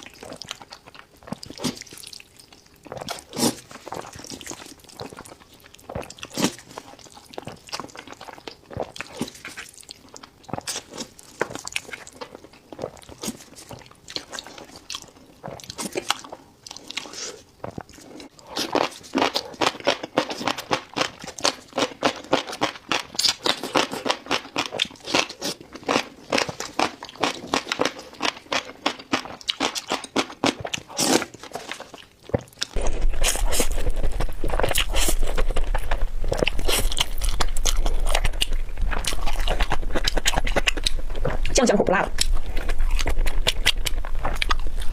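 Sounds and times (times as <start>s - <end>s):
chewing shellfish with crunches: 0.0s - 44.9s.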